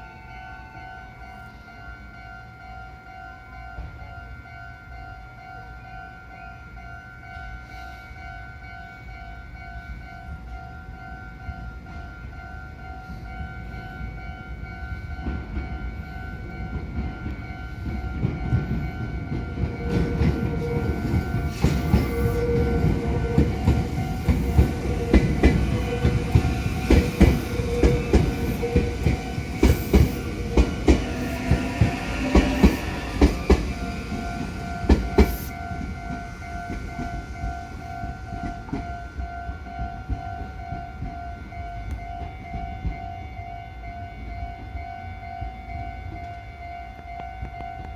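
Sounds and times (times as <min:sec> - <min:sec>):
electric train rumble: 0:00.0 - 0:47.9
level-crossing warning bell: 0:00.0 - 0:47.9
train wheels clacking on rail joints: 0:15.1 - 0:43.1.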